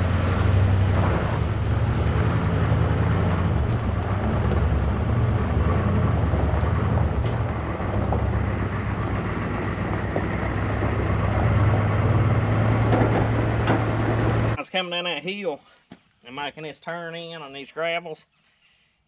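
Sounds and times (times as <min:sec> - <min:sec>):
road noise: 0:00.0 - 0:14.6
truck engine droning: 0:00.0 - 0:14.6.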